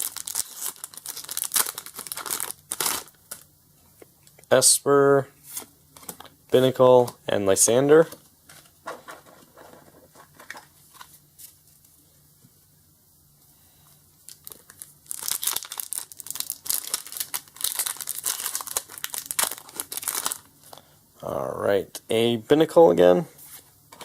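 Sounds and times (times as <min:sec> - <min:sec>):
foil wrapper crinkling and tearing: 0:00.0 - 0:03.5, 0:14.2 - 0:20.5.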